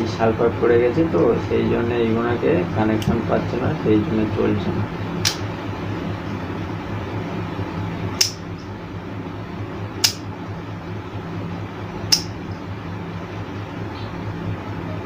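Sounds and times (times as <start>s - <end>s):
steady low hum: 0.0s - 15.0s
fan switch clicks: 3.0s - 3.2s, 5.2s - 5.5s, 8.2s - 8.7s, 10.0s - 10.3s, 12.1s - 12.4s.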